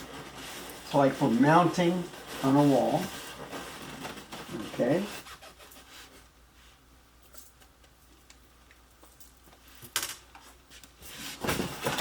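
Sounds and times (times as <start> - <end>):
packaging rustle: 0.0 - 5.3.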